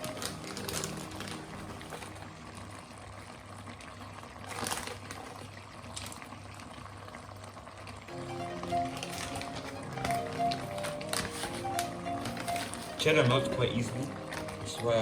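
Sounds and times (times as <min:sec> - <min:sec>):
sauce bubbling in a pan: 0:00.0 - 0:10.0.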